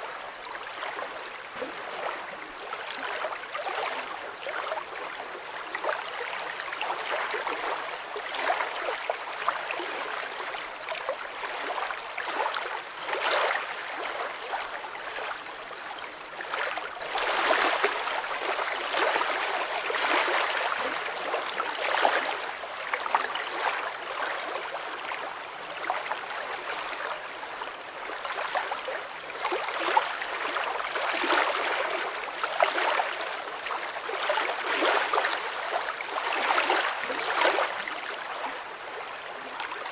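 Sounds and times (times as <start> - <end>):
lake water lapping: 16.5 - 27.6, 28.2 - 39.9.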